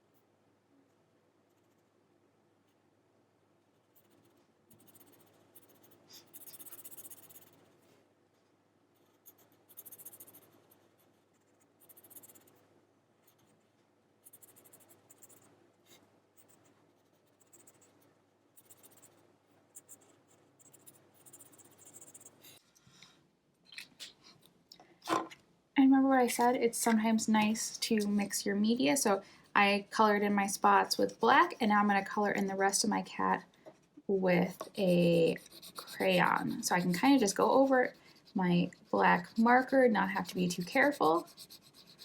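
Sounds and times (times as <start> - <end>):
marker scratching on paper: 3.7 - 7.9, 9.0 - 12.6, 14.2 - 18.0, 18.6 - 19.2, 19.8 - 22.6, 26.3 - 29.0, 34.3 - 42.0.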